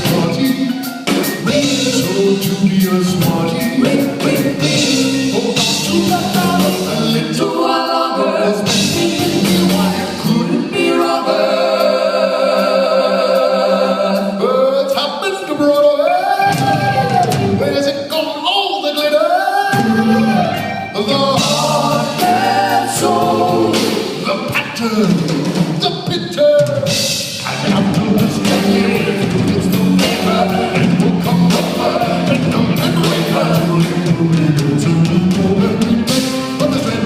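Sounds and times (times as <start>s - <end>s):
drums hitting steadily: 0.0s - 7.5s, 8.6s - 11.2s, 19.7s - 37.0s
several voices singing: 0.0s - 17.9s, 18.8s - 24.9s, 26.9s - 37.0s
live rock band playing: 0.0s - 18.6s, 19.6s - 37.0s.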